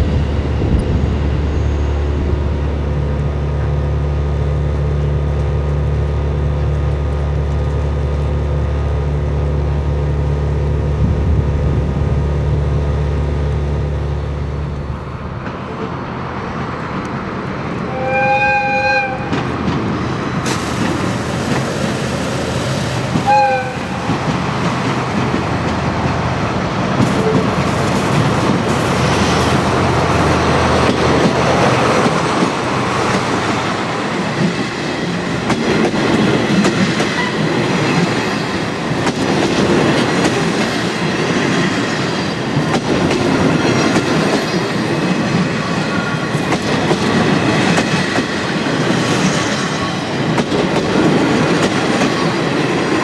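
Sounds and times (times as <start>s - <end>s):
train wheels clacking on rails: 19.1s - 53.0s.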